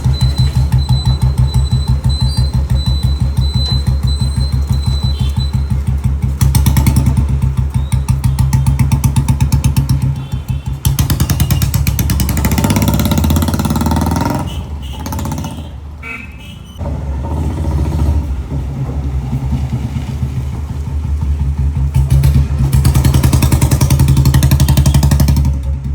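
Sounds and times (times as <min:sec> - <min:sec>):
motorcycle engine thumping: 0:00.0 - 0:15.7.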